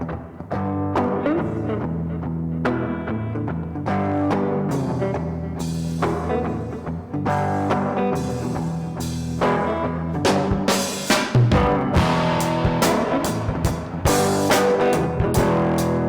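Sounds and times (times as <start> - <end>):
bass line: 0.0 - 16.0
sustained guitar notes: 0.0 - 16.0
heavy drum hits: 10.3 - 16.0
percussive beat: 10.3 - 16.0.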